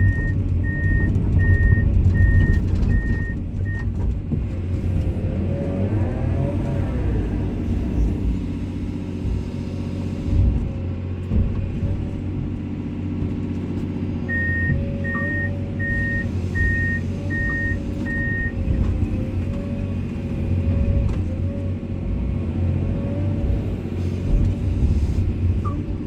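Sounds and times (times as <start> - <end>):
excavator diesel engine running: 0.0 - 26.0
warning alarm beeping: 14.3 - 18.5.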